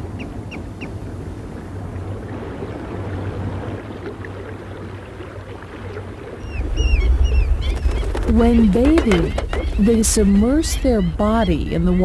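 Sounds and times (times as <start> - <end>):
low outdoor rumble: 6.3 - 12.0
bird chirping: 6.4 - 12.0.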